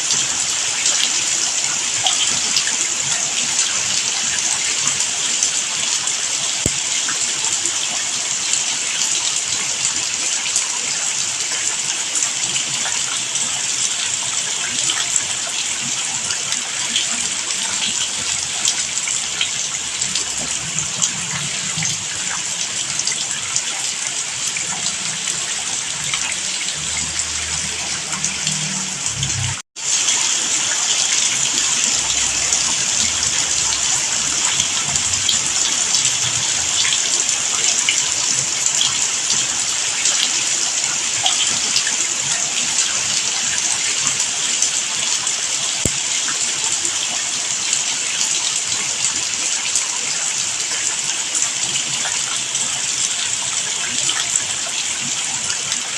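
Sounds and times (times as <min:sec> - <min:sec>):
heavy rainfall: 0:00.0 - 0:55.9.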